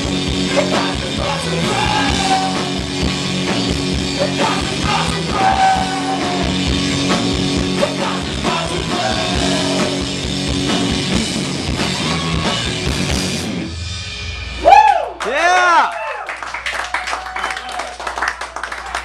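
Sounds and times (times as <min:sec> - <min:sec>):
rock band playing live: 0:00.0 - 0:14.6.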